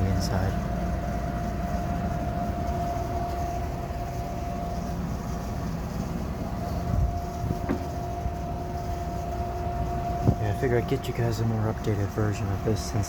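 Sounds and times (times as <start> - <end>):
furnace fan whining: 0.0 - 13.0
gas furnace rumbling: 0.0 - 13.0.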